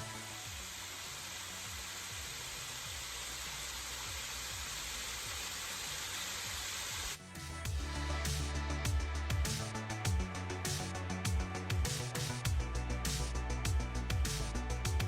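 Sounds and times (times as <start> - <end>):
steady hiss: 0.0 - 7.2.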